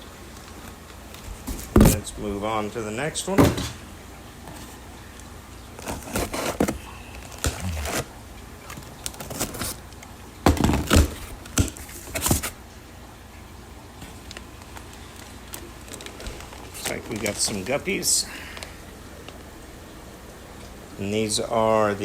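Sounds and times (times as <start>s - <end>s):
packaging rustling and knocking: 1.3s - 2.1s, 5.8s - 8.1s, 8.7s - 9.8s, 10.5s - 12.6s.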